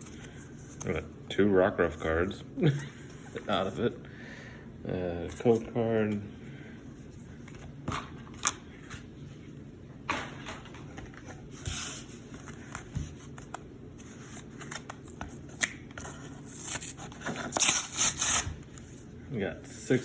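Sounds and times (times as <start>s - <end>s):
cards and wrapping rustling: 0.0s - 1.1s, 10.9s - 19.1s.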